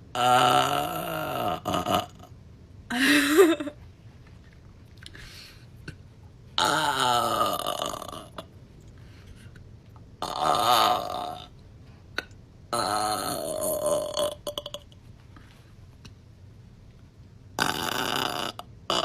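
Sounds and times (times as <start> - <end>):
woman burping loudly: 0.1 - 2.3, 6.6 - 8.4, 10.2 - 11.5, 12.7 - 14.9, 17.6 - 19.0.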